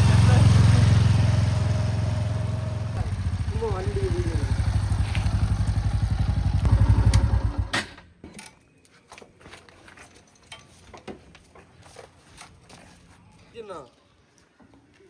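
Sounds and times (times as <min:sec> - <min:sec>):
diesel engine running: 0:00.0 - 0:07.7.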